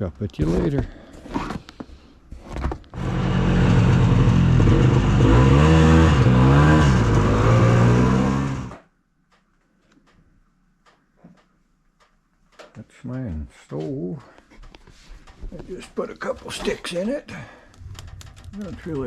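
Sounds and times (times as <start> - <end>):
snowmobile engine revving: 3.0 - 8.8.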